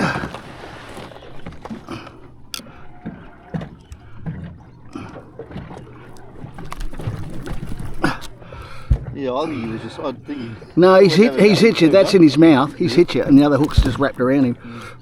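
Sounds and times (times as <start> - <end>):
steady low hum: 0.1 - 15.0
knocks and clicks of gear: 1.1 - 9.2, 12.9 - 15.0.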